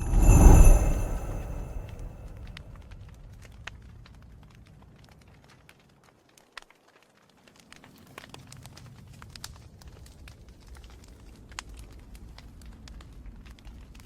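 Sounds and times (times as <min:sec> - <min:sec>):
low rumble: 0:00.0 - 0:02.9
wood fire crackling and popping: 0:03.5 - 0:14.0.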